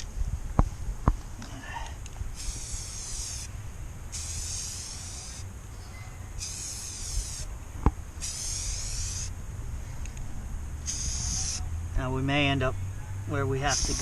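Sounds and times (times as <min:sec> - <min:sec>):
spray can hissing: 0:02.3 - 0:03.5, 0:04.1 - 0:05.5, 0:06.4 - 0:07.5, 0:08.2 - 0:09.3, 0:10.8 - 0:11.6, 0:13.7 - 0:14.0.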